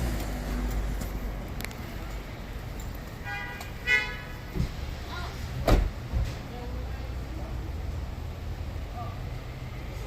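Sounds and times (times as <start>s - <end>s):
street traffic rumble: 0.0s - 10.0s
car horn toots: 3.2s - 4.3s.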